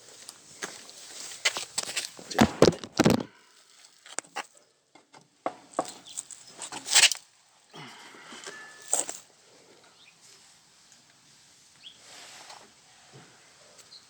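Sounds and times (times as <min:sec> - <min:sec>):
footsteps: 0:00.6 - 0:03.3
scuffs and knocks: 0:00.6 - 0:03.3.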